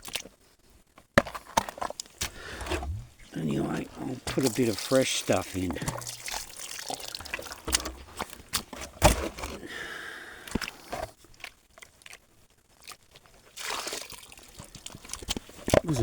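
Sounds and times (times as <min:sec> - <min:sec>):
gravel crunching in gold pan: 0:01.0 - 0:16.0
water dripping: 0:02.9 - 0:08.4.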